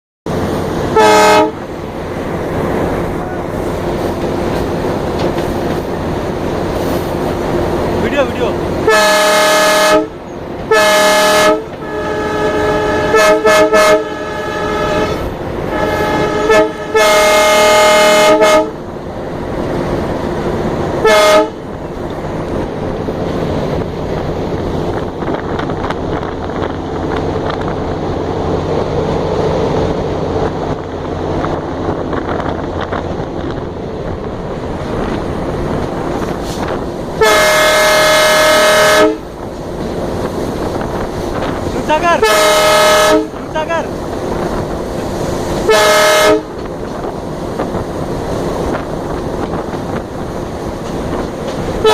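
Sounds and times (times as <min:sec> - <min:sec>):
locomotive engine rumble: 0:00.3 - 0:51.9
locomotive horn blasts: 0:00.9 - 0:01.7, 0:08.8 - 0:18.8, 0:21.0 - 0:21.6, 0:37.2 - 0:39.3, 0:42.1 - 0:43.6, 0:45.6 - 0:46.6.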